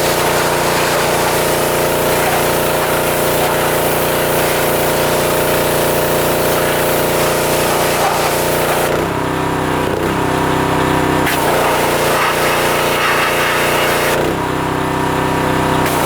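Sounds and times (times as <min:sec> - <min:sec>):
water spray hissing: 0:00.0 - 0:08.9, 0:11.3 - 0:14.2
pressure washer engine running: 0:00.0 - 0:16.0.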